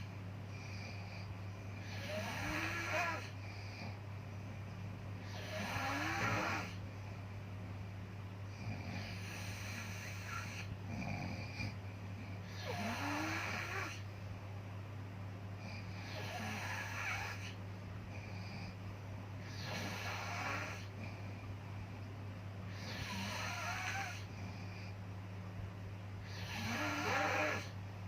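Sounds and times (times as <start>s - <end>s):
steady low hum: 0.0s - 28.0s
rasping snoring: 0.6s - 4.0s, 5.2s - 6.8s, 8.5s - 11.8s, 12.4s - 14.0s, 15.7s - 18.8s, 19.4s - 21.2s, 22.7s - 25.0s, 26.2s - 27.8s.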